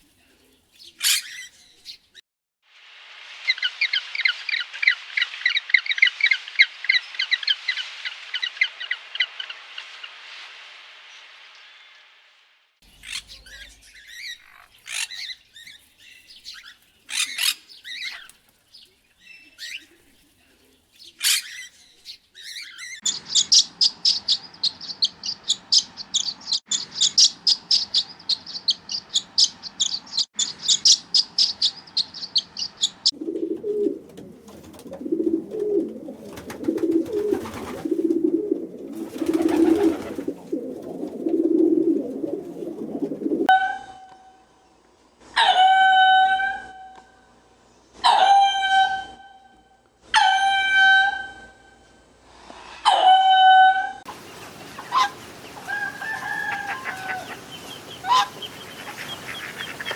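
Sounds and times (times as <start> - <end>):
low pulsing bird calls: 54.1 - 59.9
fast high bird chirping: 54.8 - 59.9.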